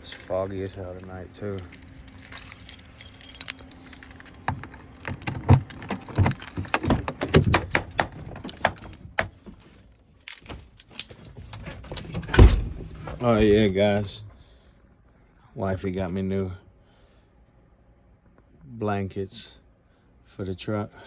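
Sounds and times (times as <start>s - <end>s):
keys jangling: 0.0s - 14.1s
clicks and knocks: 4.2s - 9.4s.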